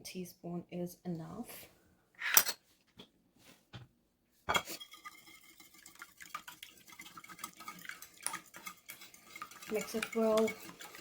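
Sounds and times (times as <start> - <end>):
utensil scraping bowl: 4.5 - 11.0.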